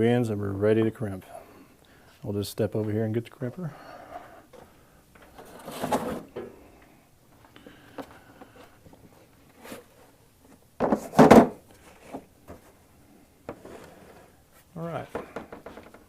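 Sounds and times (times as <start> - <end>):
tool kit knocking and clattering: 10.8 - 11.6, 15.1 - 16.0.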